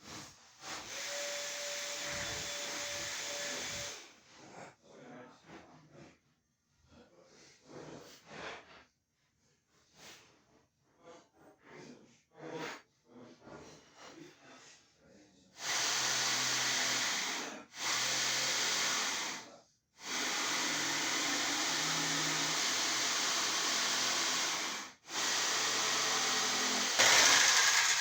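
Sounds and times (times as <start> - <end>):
power tool motor running: 20.0 - 28.0.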